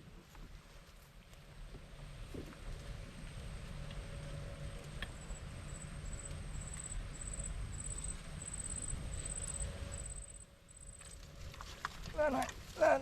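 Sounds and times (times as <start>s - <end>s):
steady low rumble: 1.2s - 12.8s.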